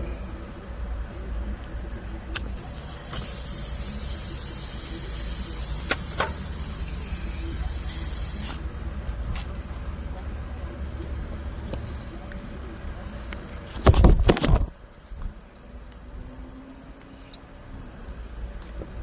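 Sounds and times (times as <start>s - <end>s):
water sprayer hissing: 2.6s - 8.7s.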